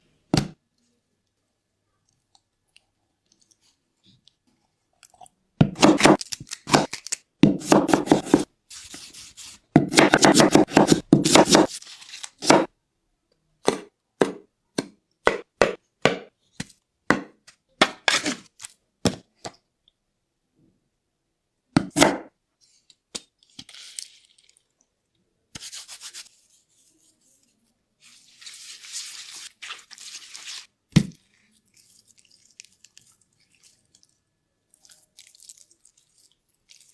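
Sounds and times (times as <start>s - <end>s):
knife chopping on cutting board: 5.6s - 8.5s, 9.8s - 11.7s, 12.4s - 12.7s, 13.7s - 16.3s, 17.1s - 18.4s, 21.8s - 22.3s.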